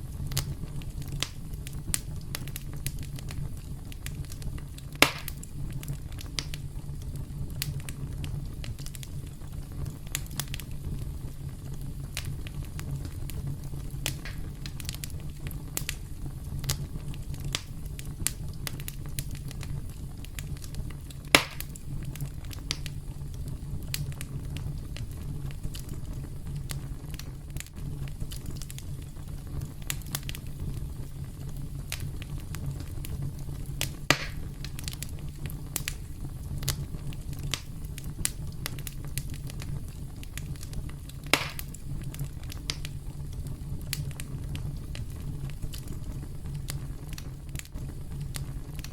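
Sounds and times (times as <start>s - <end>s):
campfire crackling: 0.0s - 48.9s
fire pops and snaps: 0.0s - 48.9s.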